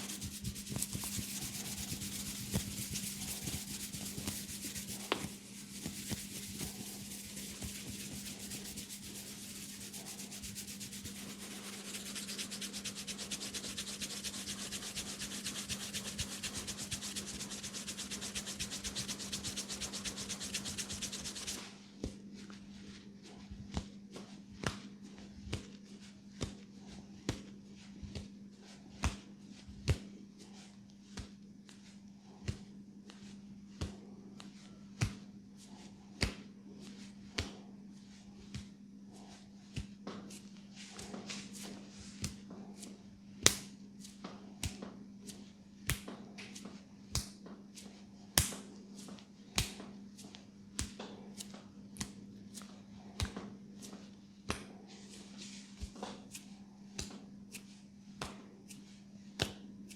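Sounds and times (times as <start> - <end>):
fingers rubbing hair and scalp: 0.0 - 21.7.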